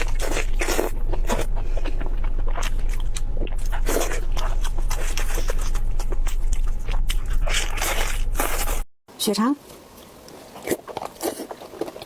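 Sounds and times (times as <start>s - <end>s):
crunchy chewing: 0.0s - 8.9s, 9.6s - 12.0s
low hum: 0.0s - 8.9s.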